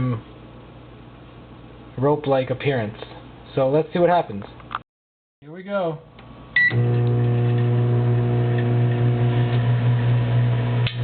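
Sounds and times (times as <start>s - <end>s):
microwave oven humming: 6.5s - 11.0s
microwave keypad beep: 6.6s - 6.8s.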